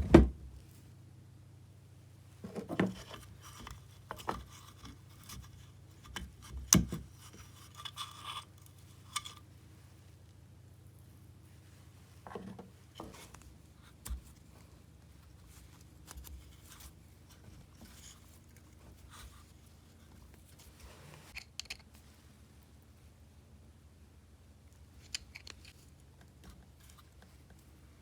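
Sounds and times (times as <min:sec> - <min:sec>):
clicks and scrapes of hand tools: 0:02.5 - 0:09.5.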